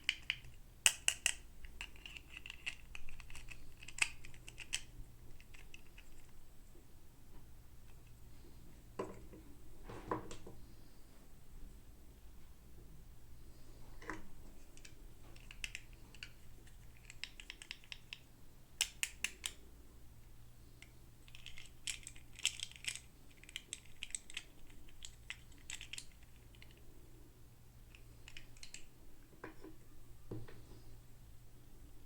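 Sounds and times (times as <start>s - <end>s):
plastic toy pieces clicking: 0.0s - 6.3s, 14.8s - 18.2s, 18.8s - 19.6s, 21.3s - 26.8s, 27.9s - 28.9s.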